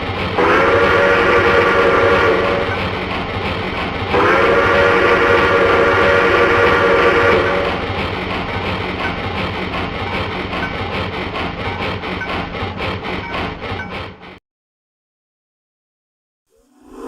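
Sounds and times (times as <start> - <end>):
train whistle chord blasts: 0.4 - 2.8, 4.1 - 7.8.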